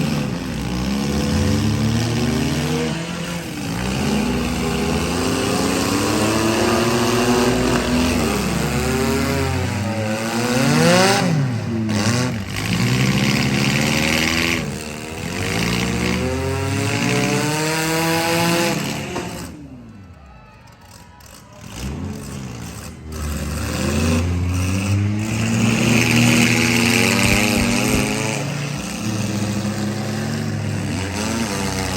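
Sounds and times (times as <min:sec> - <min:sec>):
car engines revving: 0:00.0 - 0:31.9.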